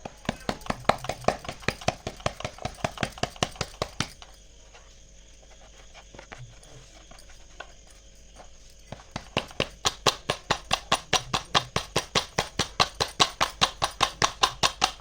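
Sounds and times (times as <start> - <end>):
hands slapping dough: 0.0 - 4.3, 8.8 - 15.0.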